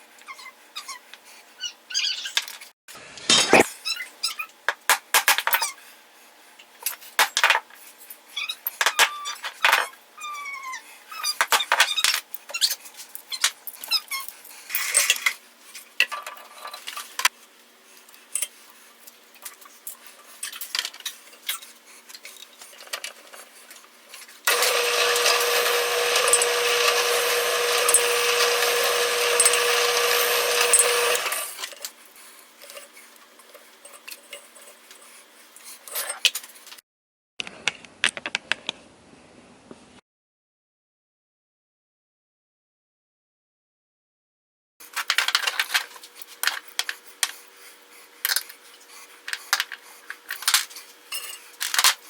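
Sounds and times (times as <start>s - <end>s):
power tool whining: 24.5s - 31.6s.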